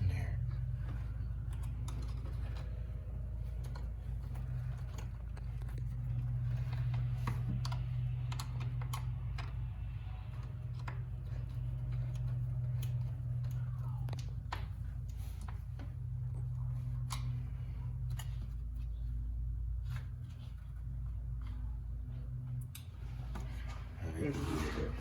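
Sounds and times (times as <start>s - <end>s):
steady low rumble: 0.0s - 25.0s
plastic parts clicking and tapping: 0.8s - 19.0s.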